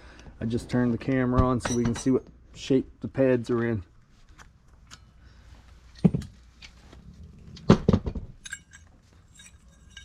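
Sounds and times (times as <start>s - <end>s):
metal brake parts clanking: 8.4s - 10.0s.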